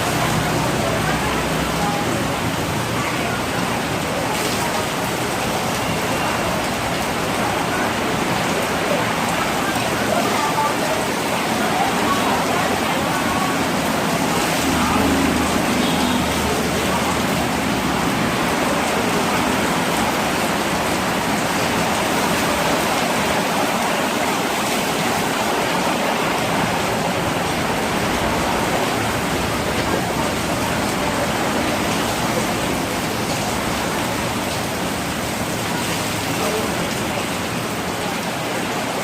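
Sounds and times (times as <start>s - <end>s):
rain falling: 0.0s - 39.0s.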